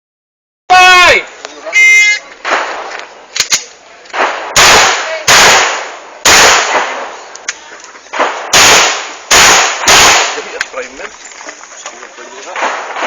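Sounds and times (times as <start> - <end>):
loud gunshots: 2.4 - 3.0, 4.1 - 7.2, 8.1 - 10.6, 12.5 - 13.0
faint gunshot reports: 4.2 - 7.2.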